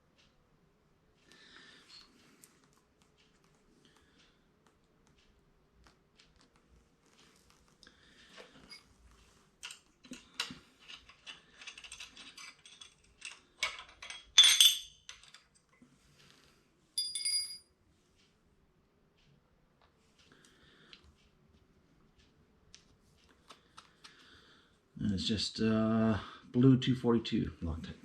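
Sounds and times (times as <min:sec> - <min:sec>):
metal bolts and tools clinking: 0:09.6 - 0:15.6, 0:17.0 - 0:17.6
ringing metal clink: 0:14.0 - 0:15.2, 0:17.0 - 0:17.7.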